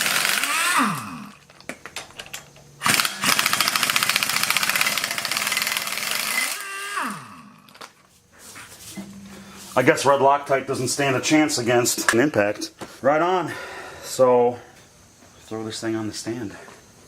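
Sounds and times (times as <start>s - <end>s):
impact wrench hammering: 2.8s - 7.6s.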